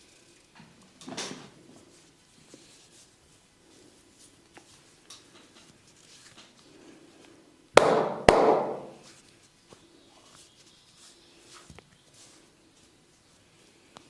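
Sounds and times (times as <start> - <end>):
loud sharp cracks: 7.8 - 9.0
hands rustling on hair: 8.8 - 14.0.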